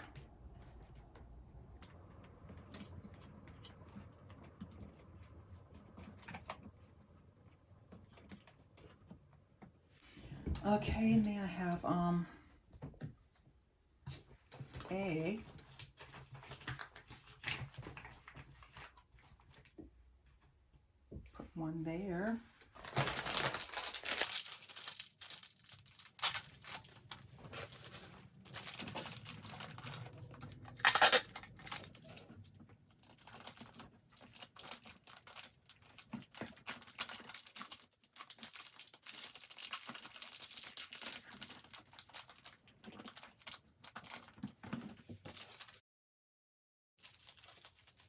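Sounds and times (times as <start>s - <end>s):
plastic packaging crinkling: 15.5s - 19.7s, 22.7s - 45.8s, 47.0s - 48.0s.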